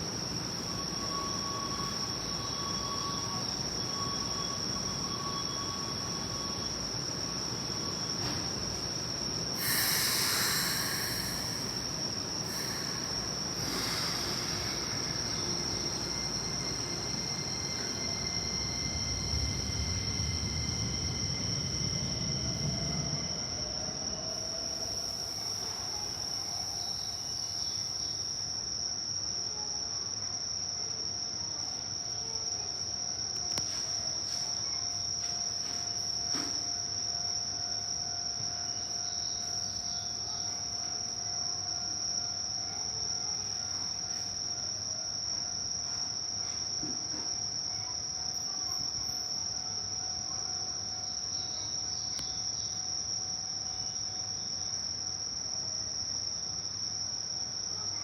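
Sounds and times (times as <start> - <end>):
train rumble: 0.0 - 27.9
crickets chirping: 0.0 - 58.0.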